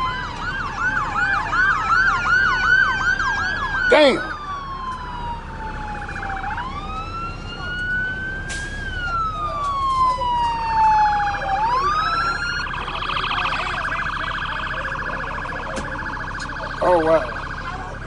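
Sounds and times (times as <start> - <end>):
siren wailing: 0.0 - 18.0
siren yelping: 0.0 - 18.0.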